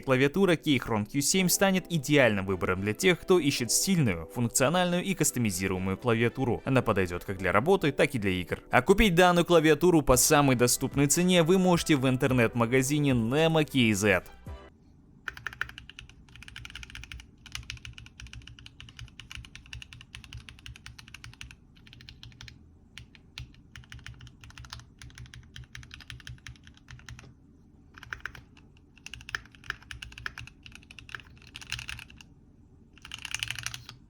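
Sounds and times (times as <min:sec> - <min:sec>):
mechanical keyboard typing: 0:15.3 - 0:27.3, 0:28.0 - 0:32.3, 0:33.0 - 0:34.0.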